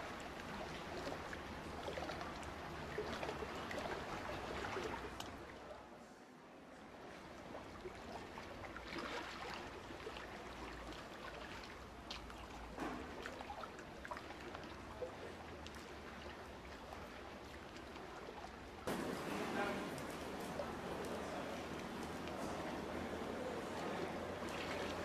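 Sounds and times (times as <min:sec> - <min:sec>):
small ticks and splashes: 0:00.0 - 0:05.5, 0:07.6 - 0:25.0
water running and trickling: 0:00.0 - 0:05.5.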